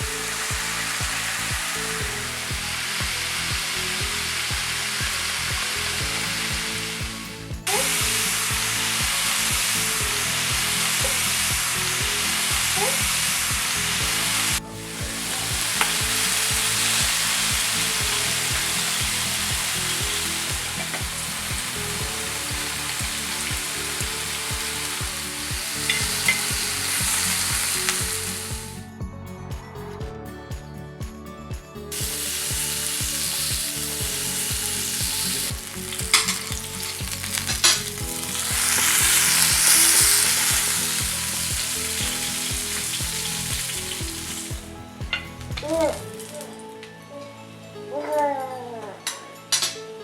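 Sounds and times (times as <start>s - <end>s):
meat sizzling on a grill: 0.0s - 28.8s, 32.0s - 46.6s
soft background music: 0.0s - 50.0s.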